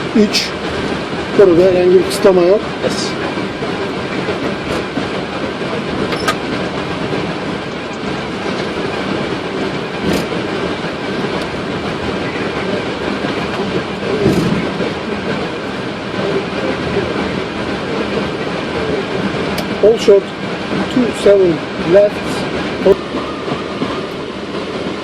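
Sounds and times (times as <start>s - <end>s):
aircraft cockpit rumble and hiss: 0.0s - 25.0s.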